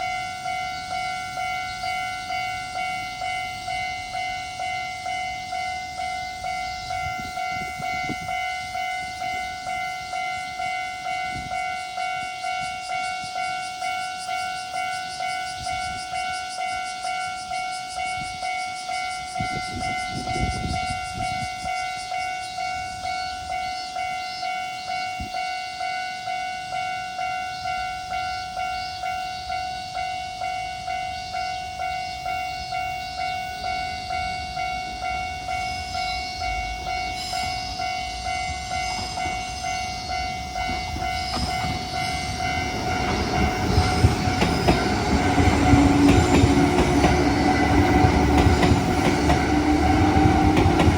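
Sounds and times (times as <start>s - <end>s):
level crossing warning bell: 0.0s - 50.9s.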